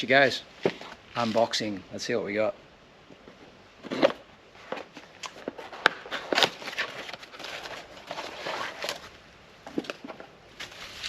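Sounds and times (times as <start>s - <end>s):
packaging rustling and crinkling: 3.8s - 11.0s.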